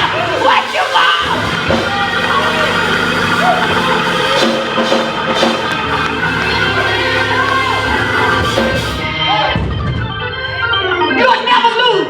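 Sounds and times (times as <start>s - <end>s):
congregation shouting and whooping: 0.0s - 9.6s
church organ chords: 0.0s - 11.2s.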